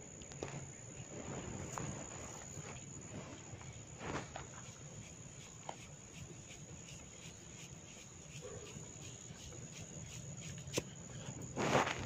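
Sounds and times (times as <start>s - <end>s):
hair rustling: 4.5s - 11.3s.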